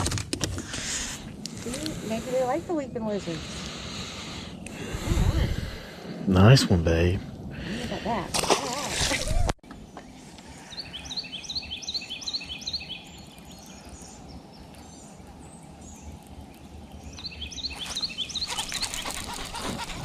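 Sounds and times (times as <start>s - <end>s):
low outdoor rumble: 0.6s - 8.4s
songbird chirping: 9.7s - 20.0s.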